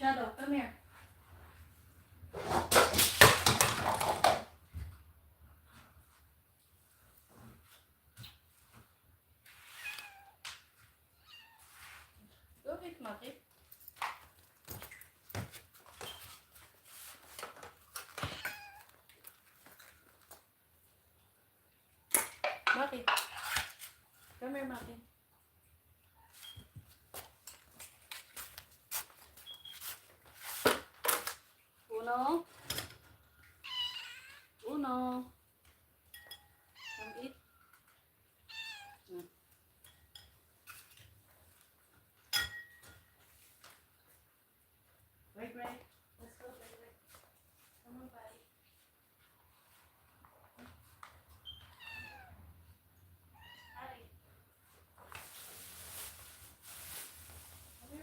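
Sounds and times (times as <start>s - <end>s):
cat meowing: 9.7s - 10.4s, 11.2s - 11.7s, 18.2s - 18.9s, 33.6s - 34.5s, 36.7s - 37.3s, 38.5s - 39.1s, 51.7s - 52.4s, 53.4s - 53.8s
food dish clinking: 42.3s - 43.1s.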